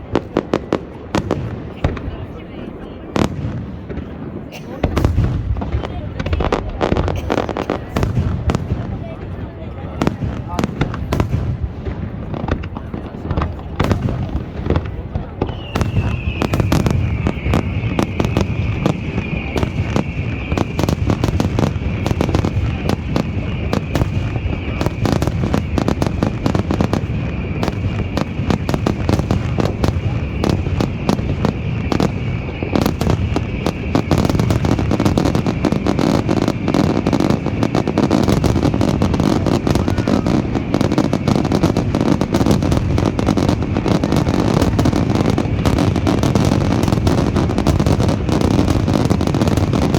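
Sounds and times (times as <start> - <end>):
fireworks bangs and crackles: 0.0 - 49.9
high steady whistle-like tone: 15.4 - 49.9.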